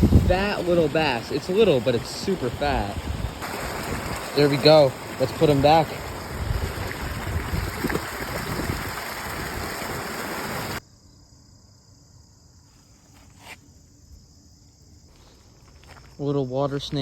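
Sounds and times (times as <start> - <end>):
faint insects: 0.0 - 8.1, 10.3 - 17.0
rushing river water: 0.0 - 10.8.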